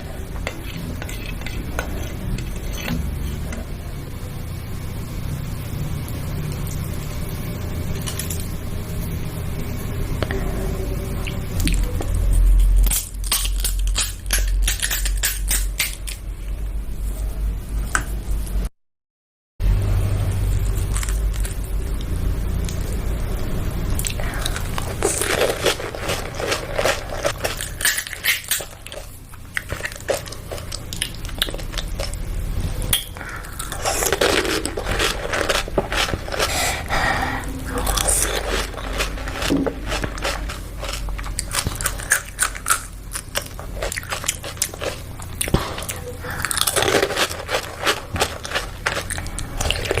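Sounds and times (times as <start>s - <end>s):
low background rumble: 0.0s - 18.7s, 19.6s - 50.0s
crisp shells crunching: 11.6s - 16.3s, 20.6s - 22.0s, 24.0s - 32.3s, 32.9s - 50.0s.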